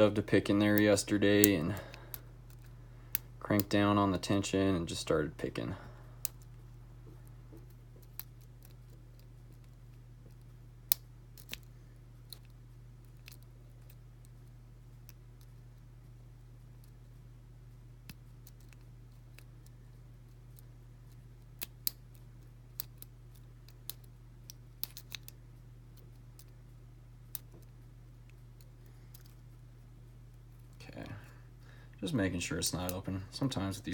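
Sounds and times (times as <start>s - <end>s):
steady low hum: 0.0s - 33.9s.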